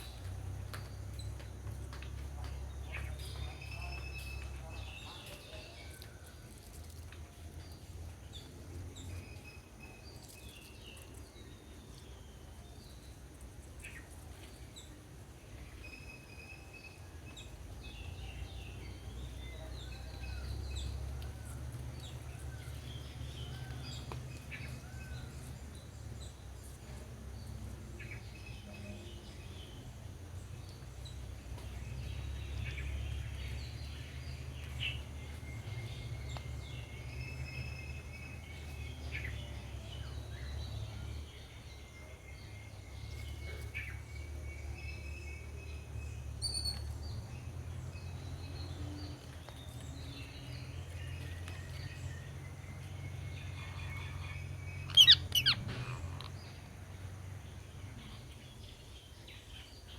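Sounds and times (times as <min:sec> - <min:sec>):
birds chirping and calling: 0:31.1 - 0:59.9.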